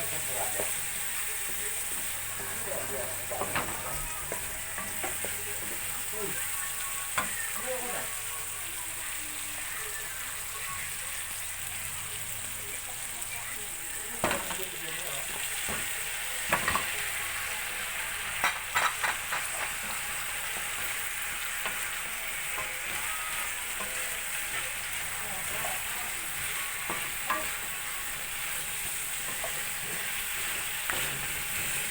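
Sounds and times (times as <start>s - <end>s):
meat sizzling in a pan: 0.0s - 31.9s
utensil knocking against pan: 18.4s - 20.0s.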